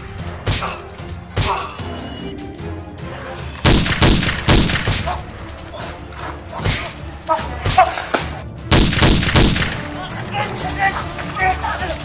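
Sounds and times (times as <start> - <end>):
background music: 0.0 - 12.0
thumps and whacks: 0.4 - 1.8, 3.6 - 5.3.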